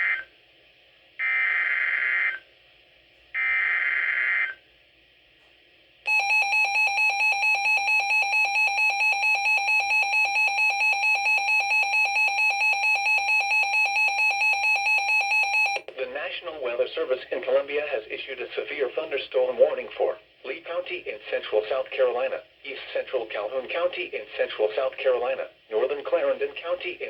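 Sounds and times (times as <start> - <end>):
wavering attention alarm tone: 6.1 - 15.8.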